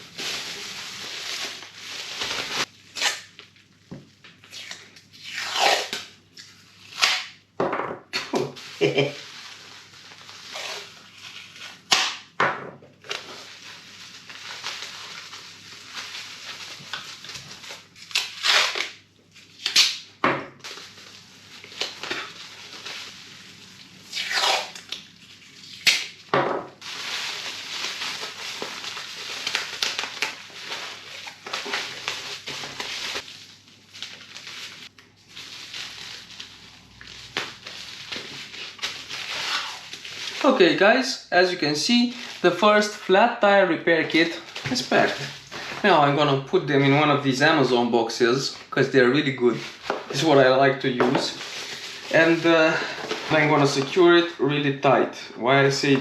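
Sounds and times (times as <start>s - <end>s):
packaging ripping: 0.0s - 3.6s, 4.5s - 6.1s, 6.8s - 7.4s, 8.6s - 12.3s, 13.0s - 26.2s, 26.8s - 40.6s, 41.9s - 43.0s, 49.5s - 54.0s
packaging crinkling and rustling: 0.0s - 4.4s, 8.4s - 12.0s, 13.0s - 19.9s, 20.6s - 40.6s, 41.9s - 43.1s, 44.0s - 46.1s, 48.4s - 54.4s.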